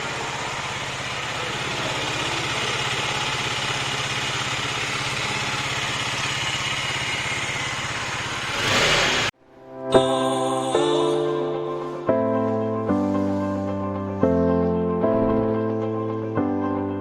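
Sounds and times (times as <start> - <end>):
motorcycle engine idling: 0.0 - 9.3, 13.8 - 16.1.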